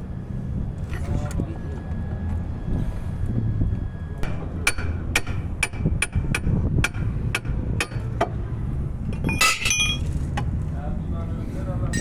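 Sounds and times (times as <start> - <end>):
low steady hum: 0.0 - 12.0
hammer striking metal: 4.2 - 8.1.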